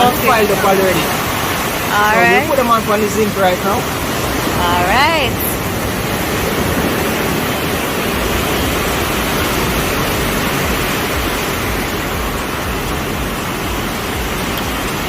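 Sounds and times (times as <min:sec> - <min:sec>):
surf: 0:00.0 - 0:15.0
wind: 0:00.0 - 0:15.0
low rumble: 0:03.8 - 0:15.0.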